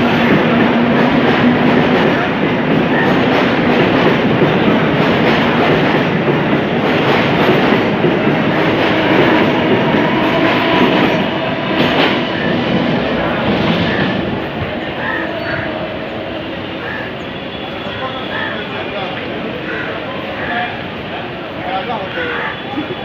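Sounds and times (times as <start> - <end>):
train knock: 0.0 - 17.1
train wheels on rail: 0.0 - 23.0.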